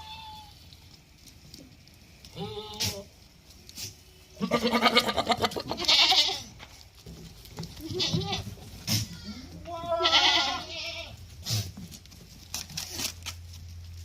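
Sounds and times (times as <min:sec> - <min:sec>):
goats bleating: 0:00.0 - 0:00.6, 0:02.3 - 0:03.2, 0:04.3 - 0:06.6, 0:07.8 - 0:11.3.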